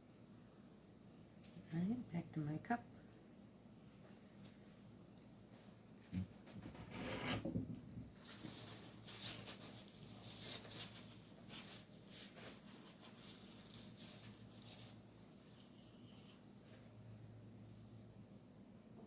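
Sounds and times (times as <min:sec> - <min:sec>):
paint cup rubbing and scuffing: 0:06.1 - 0:07.6
paint cup scrape: 0:06.6 - 0:07.5.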